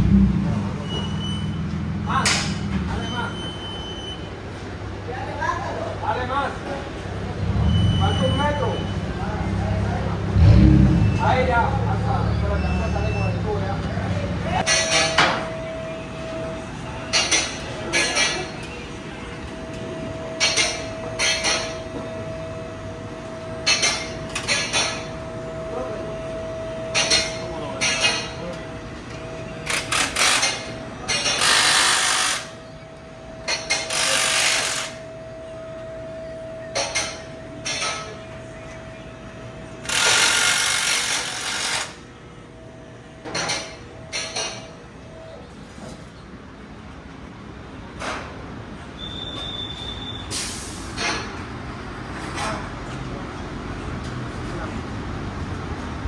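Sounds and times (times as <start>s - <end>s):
tools clanking on metal: 14.6s - 15.5s
power tool bursts: 29.7s - 30.6s, 31.3s - 32.6s, 33.8s - 35.0s, 39.8s - 42.0s.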